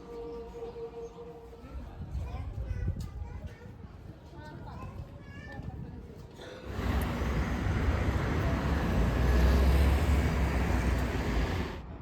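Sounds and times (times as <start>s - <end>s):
vehicle passing with low rumble: 6.7s - 11.9s.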